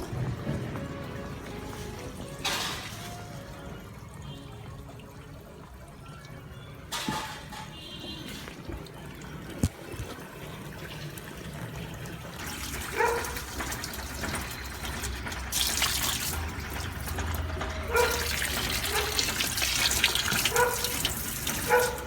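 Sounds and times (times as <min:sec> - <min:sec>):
water running and splashing: 0:00.0 - 0:22.0.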